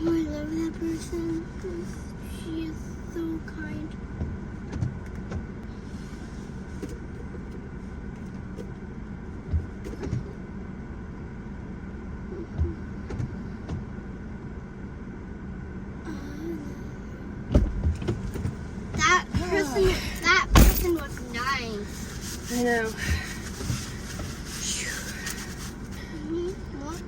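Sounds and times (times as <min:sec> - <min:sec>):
car engine and road hum: 0:00.0 - 0:27.0
heavy thump: 0:17.5 - 0:21.2
short knocks and bumps: 0:17.5 - 0:21.6.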